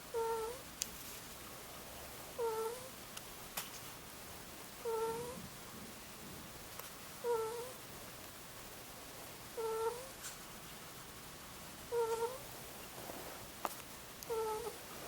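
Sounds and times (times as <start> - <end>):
ferret snoring soft coos: 0.1 - 0.6, 2.0 - 3.0, 4.8 - 5.4, 7.2 - 7.8, 9.5 - 10.2, 11.9 - 13.4, 14.2 - 15.0.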